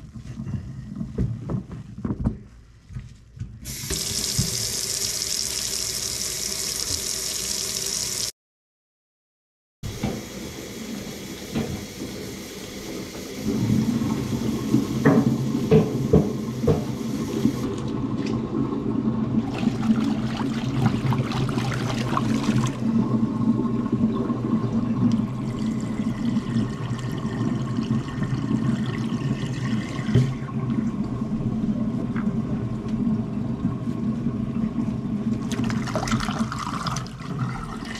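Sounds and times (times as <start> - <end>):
water rushing down sink drain: 3.7 - 8.3, 9.9 - 32.5, 35.3 - 37.9
knocks: 15.0 - 17.0.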